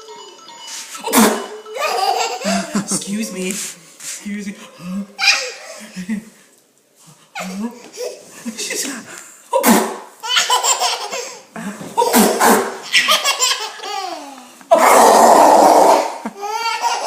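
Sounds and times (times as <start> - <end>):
baby laughing: 1.0 - 3.4, 5.2 - 5.8, 10.2 - 14.8, 15.9 - 17.0
woman sneezing: 9.6 - 10.0.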